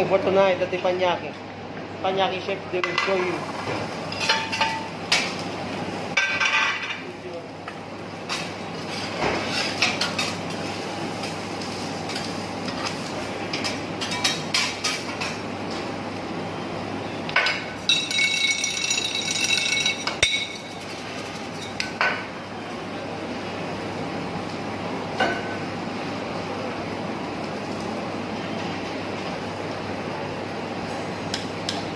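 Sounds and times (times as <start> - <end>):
steady sizzle: 3.2 - 31.9
metal spatulas clanking on griddle: 4.1 - 5.3, 13.5 - 15.4, 17.4 - 20.8.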